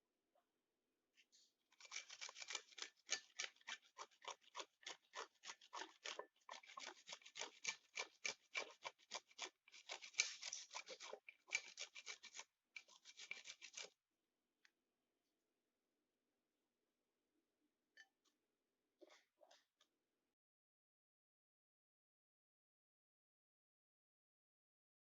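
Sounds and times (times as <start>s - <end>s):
rapid scraping strokes: 1.8s - 13.9s.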